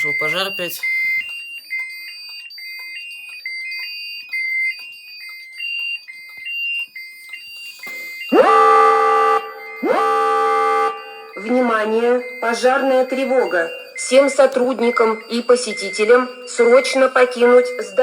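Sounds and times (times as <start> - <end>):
alarm panel beeping: 0.0 - 18.0
long alarm tones: 0.0 - 18.0.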